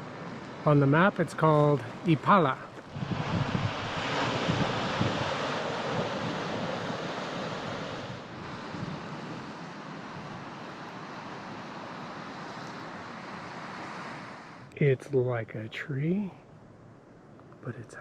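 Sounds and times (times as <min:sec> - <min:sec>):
ocean surf washing: 0:00.0 - 0:17.0
wind on microphone: 0:01.6 - 0:14.6.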